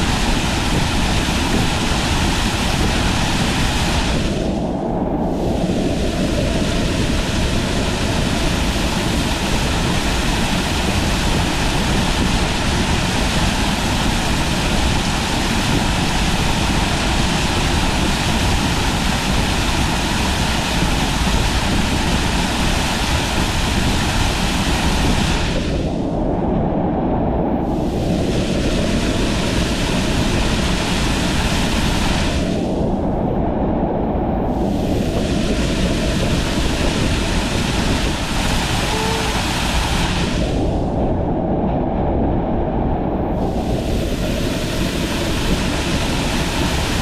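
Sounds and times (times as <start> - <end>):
waterfall rushing: 34.8 - 40.5, 43.4 - 47.0.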